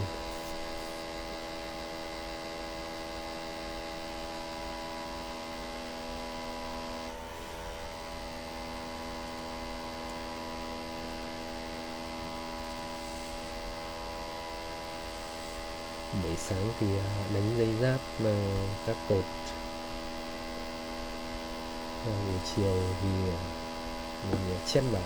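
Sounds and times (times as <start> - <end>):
electrical hum: 0.0 - 25.0.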